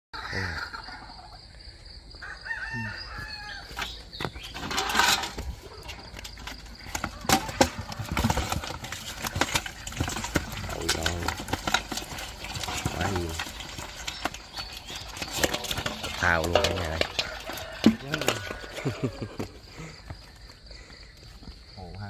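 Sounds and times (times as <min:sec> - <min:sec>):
rooster crowing: 0:02.2 - 0:03.8, 0:17.1 - 0:19.2.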